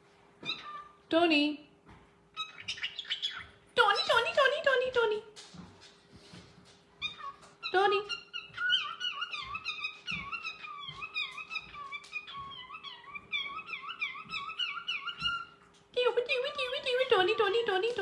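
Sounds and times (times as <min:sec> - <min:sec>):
cockatiel warbling: 0:00.4 - 0:01.0, 0:07.0 - 0:15.6.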